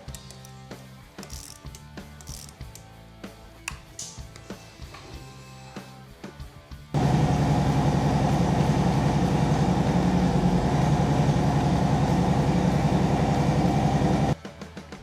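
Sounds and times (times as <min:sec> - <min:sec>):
motorcycle engine running: 0:07.0 - 0:14.4.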